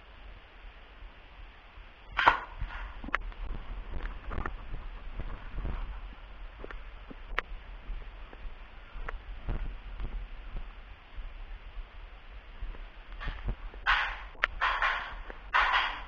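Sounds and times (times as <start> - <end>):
footsteps: 2.2 - 11.4, 12.6 - 16.0.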